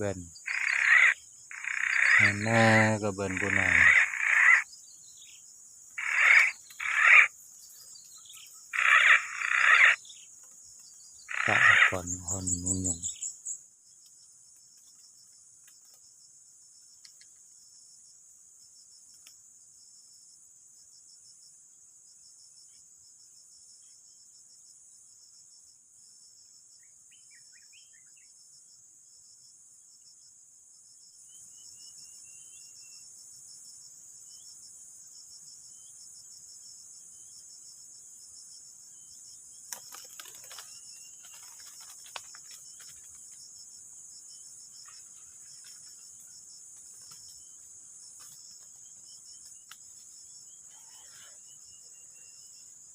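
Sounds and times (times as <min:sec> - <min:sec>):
faint bird chirps: 0:00.0 - 0:14.1, 0:26.8 - 0:28.4, 0:31.2 - 0:33.1, 0:48.5 - 0:52.9
insects trilling: 0:00.0 - 0:52.9.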